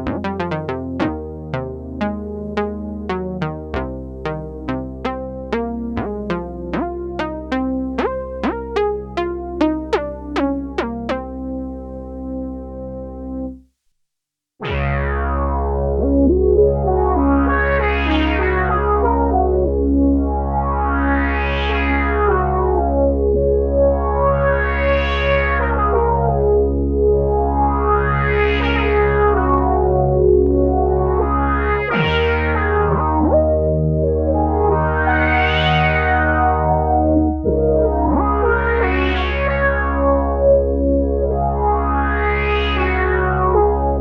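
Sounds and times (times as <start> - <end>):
synthesizer plucky short notes: 0.0 - 11.7
synthesizer held bass note: 0.0 - 13.6, 14.6 - 44.0.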